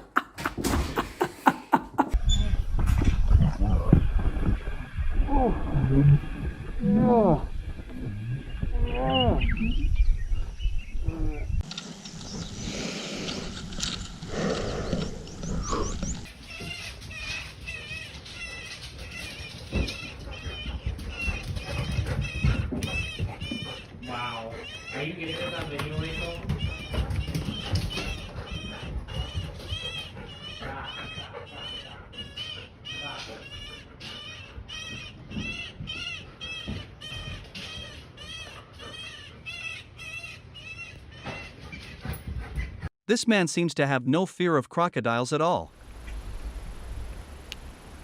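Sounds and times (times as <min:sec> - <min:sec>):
animal high cries: 0:16.3 - 0:41.9.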